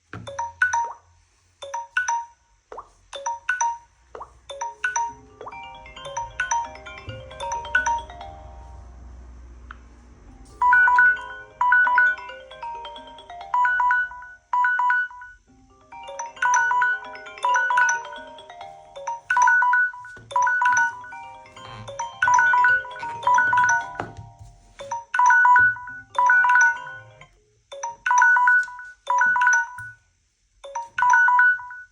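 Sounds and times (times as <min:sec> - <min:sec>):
phone alert tone melody: 0:03.2 - 0:03.9, 0:04.5 - 0:09.0, 0:10.5 - 0:30.0.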